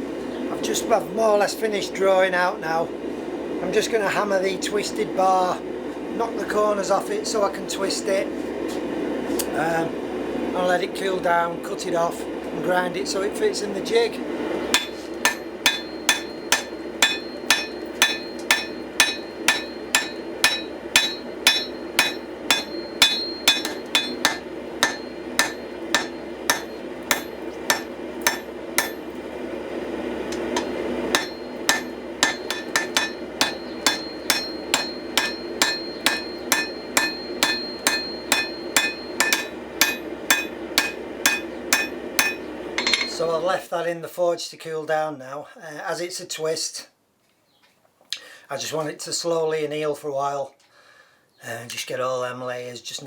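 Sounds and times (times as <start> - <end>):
hammer striking hot steel on anvil: 14.7 - 29.2, 30.3 - 43.3.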